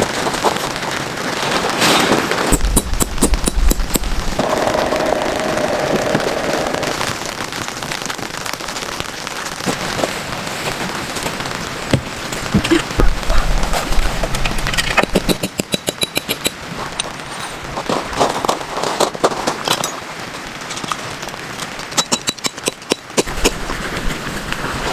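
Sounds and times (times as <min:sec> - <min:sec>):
heavy rain on tent fabric: 0:00.0 - 0:24.9
wind rumble on microphone: 0:11.9 - 0:15.5.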